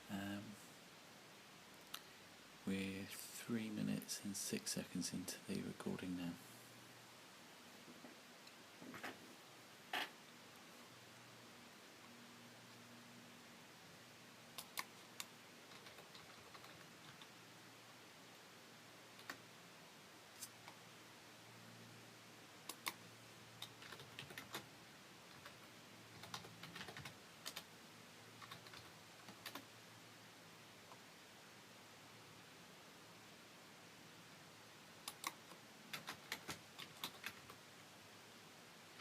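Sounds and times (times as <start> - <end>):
faint low hum: 0.0 - 39.0
sharp clicks and light taps: 22.6 - 23.0, 35.0 - 37.6.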